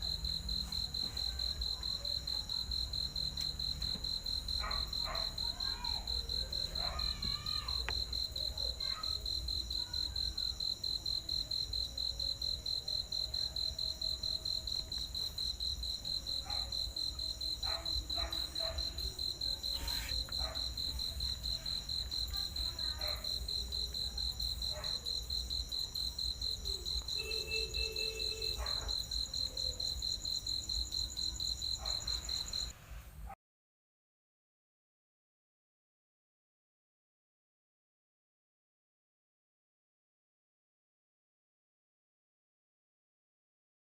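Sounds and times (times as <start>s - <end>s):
cricket chirping: 0.0s - 32.8s.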